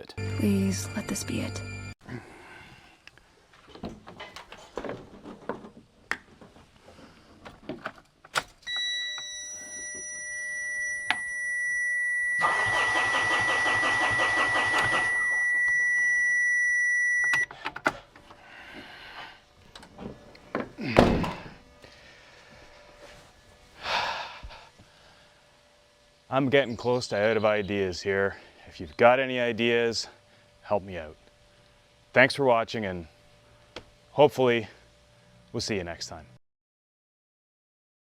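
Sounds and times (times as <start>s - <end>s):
high-pitched warning beep: 0.2s - 2.0s, 8.7s - 17.4s
truck starter cranking: 12.4s - 15.4s.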